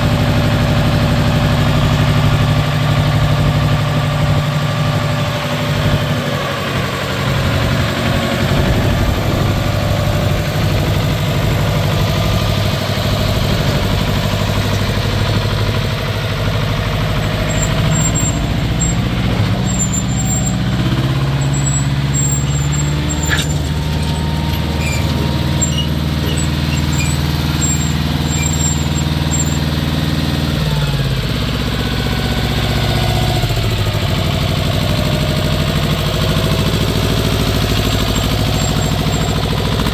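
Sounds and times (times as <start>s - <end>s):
tractor diesel engine running: 0.0s - 39.9s
faint high squeaks: 17.2s - 29.7s, 37.6s - 39.5s.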